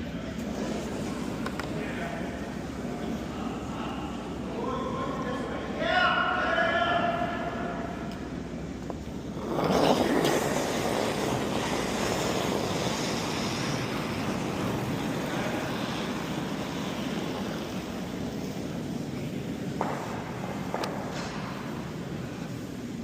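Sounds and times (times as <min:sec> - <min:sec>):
curling stone sliding on ice: 0:08.9 - 0:22.6
brooms sweeping ice: 0:09.1 - 0:22.9.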